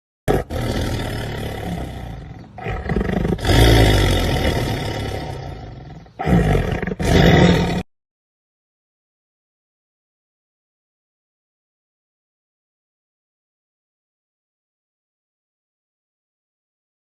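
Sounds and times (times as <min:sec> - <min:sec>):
big cat roaring and growling: 0:00.3 - 0:07.9.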